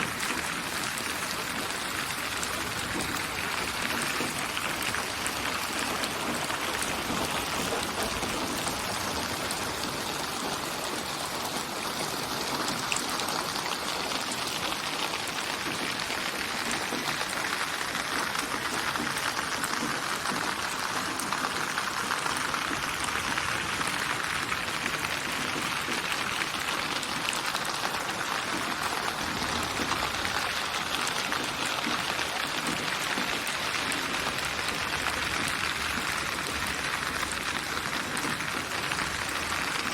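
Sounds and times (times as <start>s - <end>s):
steady rain hiss: 0.0s - 39.9s.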